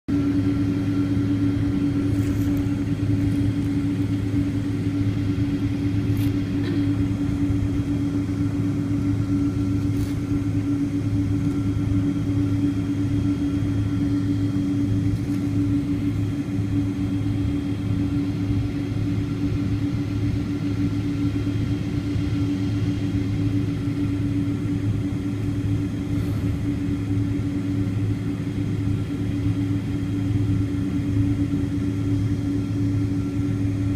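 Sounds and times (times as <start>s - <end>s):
jet engines droning: 0.1s - 33.9s.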